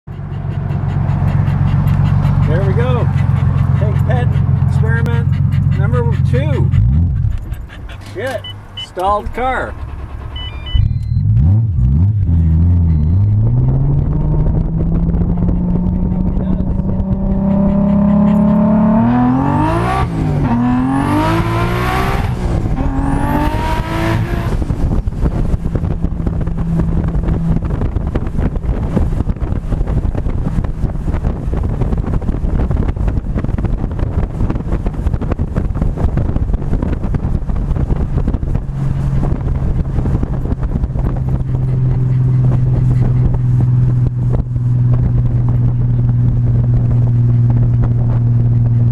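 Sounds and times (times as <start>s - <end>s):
road and wind noise: 0.0s - 48.9s
car engine accelerating: 0.1s - 48.9s
steady engine drone: 0.1s - 48.9s.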